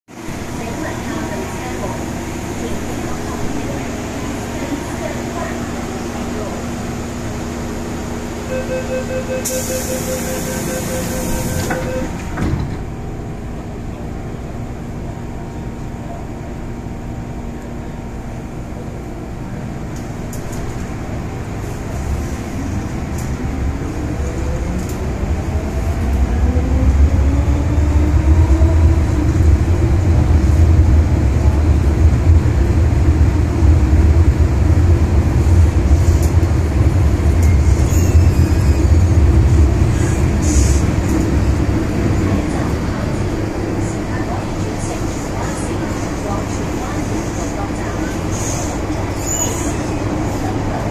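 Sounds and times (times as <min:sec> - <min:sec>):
train running rumble: 0:00.1 - 0:50.9
train doors knocking shut: 0:11.4 - 0:12.9.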